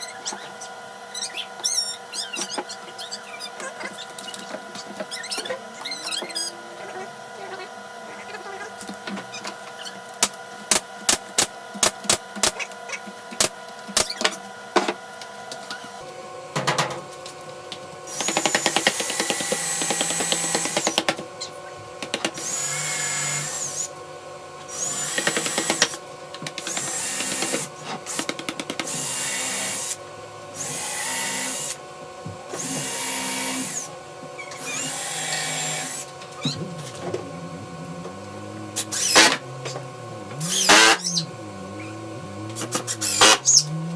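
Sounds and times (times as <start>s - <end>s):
cordless drill motor whine: 18.1s - 21.7s, 22.4s - 24.0s, 24.7s - 26.0s, 26.6s - 31.8s, 32.5s - 43.9s.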